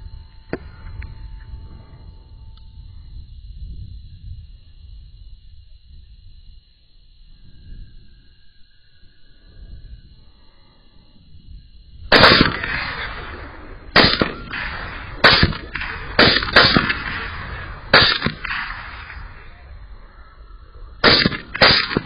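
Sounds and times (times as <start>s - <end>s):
gunshots with rolling echo: 12.1s - 20.0s, 21.0s - 22.0s.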